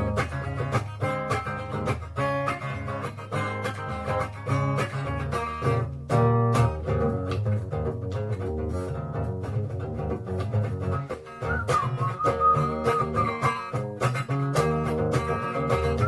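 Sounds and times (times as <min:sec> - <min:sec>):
acoustic guitar playing: 0:00.0 - 0:16.0
bass line: 0:05.8 - 0:13.7.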